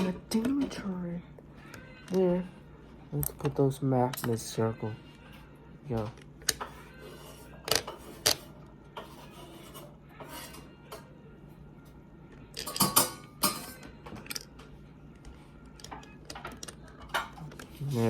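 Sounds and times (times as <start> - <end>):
clicks of plastic toy parts: 15.8 - 17.7.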